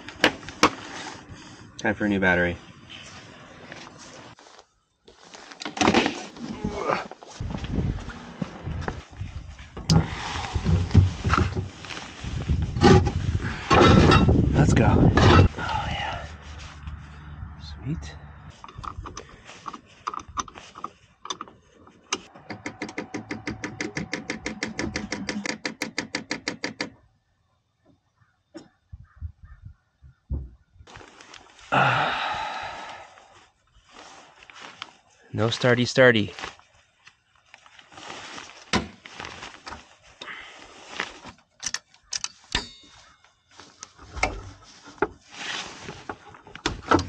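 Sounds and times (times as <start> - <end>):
metal parts clicking and clanking: 13.7 - 14.4.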